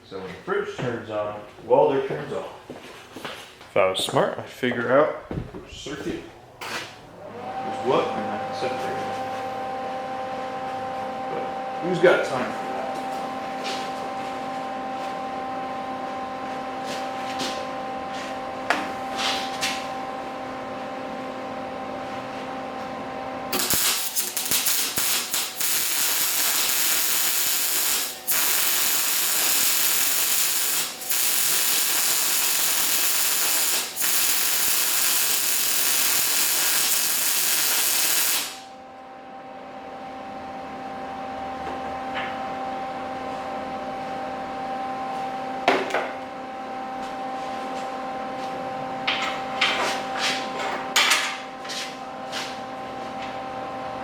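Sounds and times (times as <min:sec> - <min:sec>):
steady hum: 0:07.8 - 0:50.8
welding hiss: 0:23.5 - 0:38.6.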